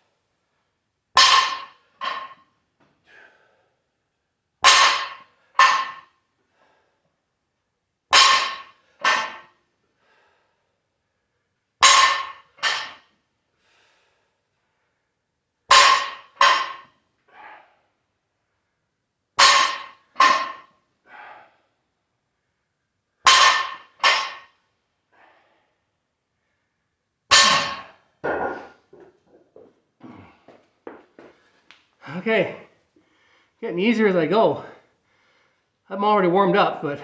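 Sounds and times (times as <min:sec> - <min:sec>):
barbell plates clanking: 0:01.2 - 0:02.4, 0:04.6 - 0:06.0, 0:08.1 - 0:09.4, 0:11.8 - 0:13.0, 0:15.7 - 0:16.9, 0:19.4 - 0:20.6, 0:23.3 - 0:24.4, 0:27.3 - 0:29.6.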